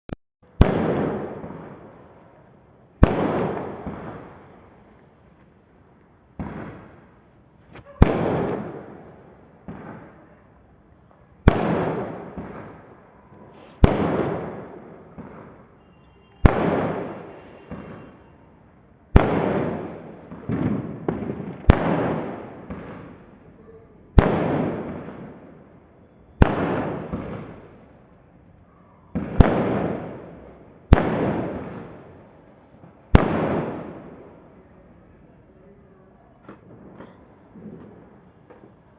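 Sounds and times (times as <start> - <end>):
fireworks bangs: 0.6 - 2.2, 3.0 - 4.9, 6.4 - 7.2, 7.8 - 10.4, 11.4 - 12.9, 13.5 - 18.4, 19.1 - 23.4, 24.2 - 25.6, 26.4 - 27.9, 29.1 - 34.5, 36.5 - 38.8.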